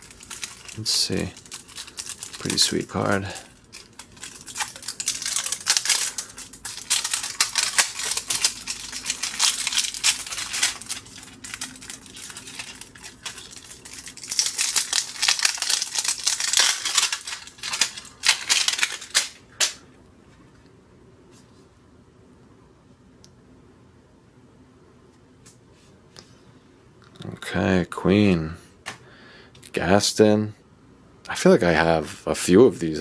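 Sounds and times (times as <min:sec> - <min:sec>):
trading cards and plastic handled: 0:00.0 - 0:19.8.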